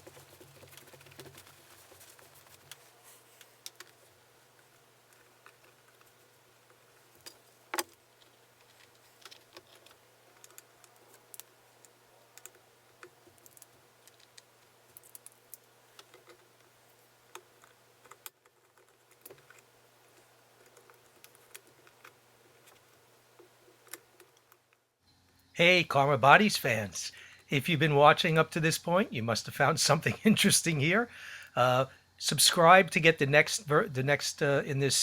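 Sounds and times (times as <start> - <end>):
small parts clicking and tapping: 0.0 - 25.5.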